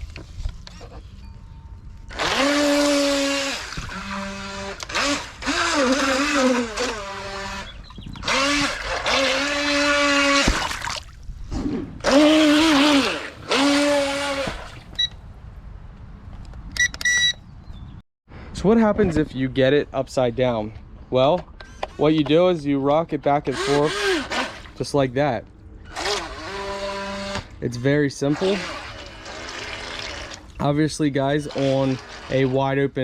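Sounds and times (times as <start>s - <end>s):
electric motor whining: 2.1s - 10.5s, 12.0s - 14.8s.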